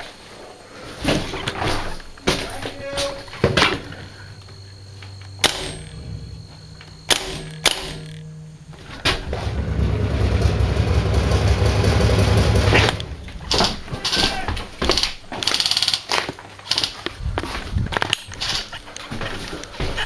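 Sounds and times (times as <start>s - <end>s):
loud low rumbling noise: 2.6s - 14.1s.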